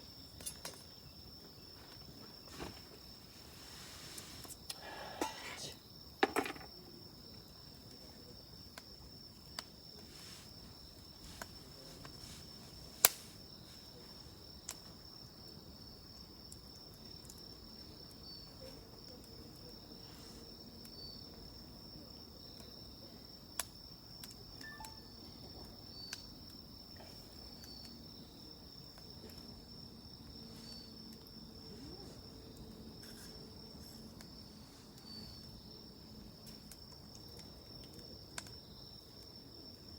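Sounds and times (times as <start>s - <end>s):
insects trilling: 0.0s - 39.9s
wood fire popping and crackling: 6.7s - 19.8s, 28.7s - 39.3s.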